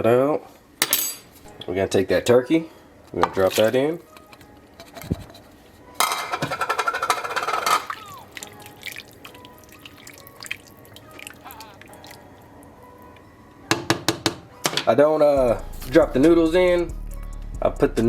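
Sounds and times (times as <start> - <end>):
clinks and liquid sounds: 6.0 - 12.3
meat splashing into soup: 7.9 - 12.2.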